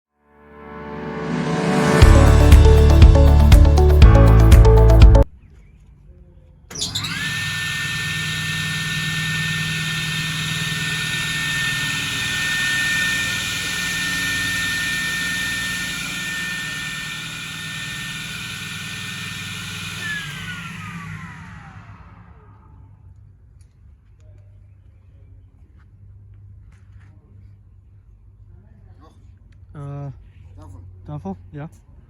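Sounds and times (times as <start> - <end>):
table saw whining: 1.9 - 5.2, 6.7 - 22.9.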